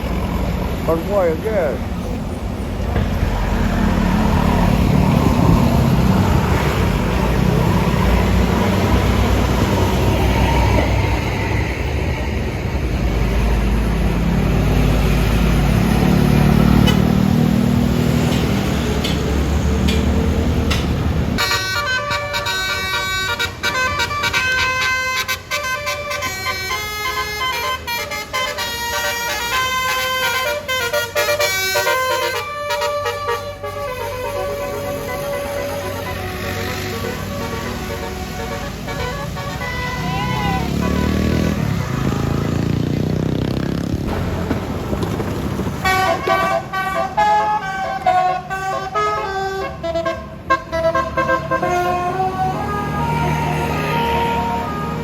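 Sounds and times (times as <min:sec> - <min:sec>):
diesel bus engine rumbling: 0:00.0 - 0:55.0
musical bus horn playing: 0:20.7 - 0:42.6, 0:45.8 - 0:55.0.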